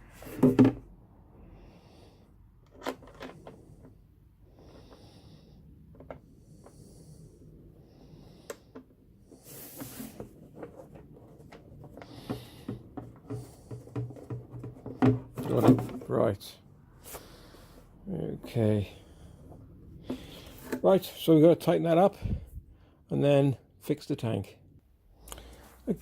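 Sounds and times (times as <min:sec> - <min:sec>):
rustling scrape: 0:09.3 - 0:12.0
clicks and knocks on plastic: 0:10.6 - 0:16.0.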